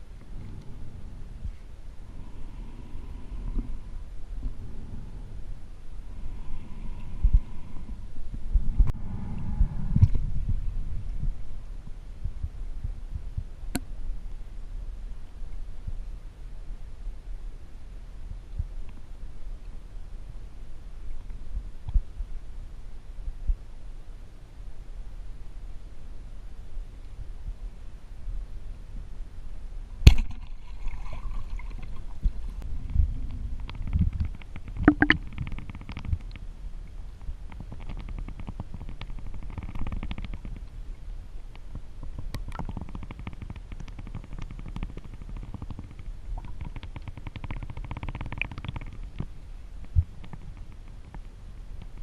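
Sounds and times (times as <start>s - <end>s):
underwater rumble of moving water: 0.0s - 13.6s, 30.2s - 52.0s
sharp knocks underwater: 30.1s - 30.6s, 34.8s - 36.2s
underwater crackling: 33.6s - 36.4s, 42.3s - 49.3s.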